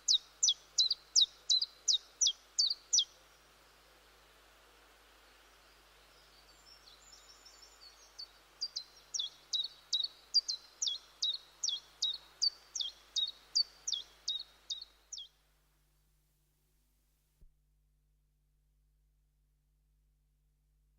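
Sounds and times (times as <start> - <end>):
steady background hiss: 0.0 - 17.5.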